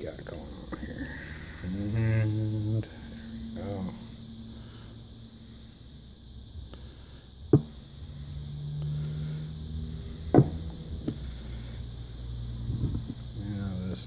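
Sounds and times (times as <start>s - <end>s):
low steady hum: 0.0s - 14.0s
sharp knocks: 7.5s - 7.7s, 10.3s - 10.6s.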